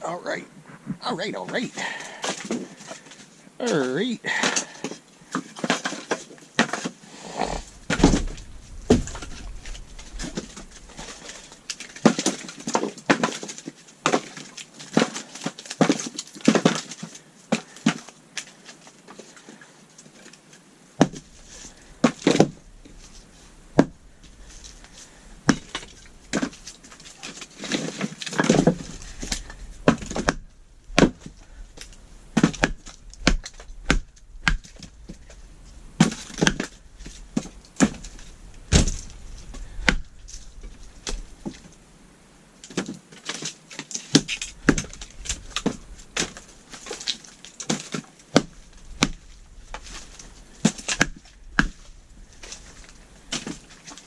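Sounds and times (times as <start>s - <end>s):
wooden boards knocking and clattering: 4.3s - 7.0s, 7.9s - 18.1s, 23.8s - 24.0s, 24.7s - 35.4s, 36.0s - 41.7s, 42.7s - 54.0s.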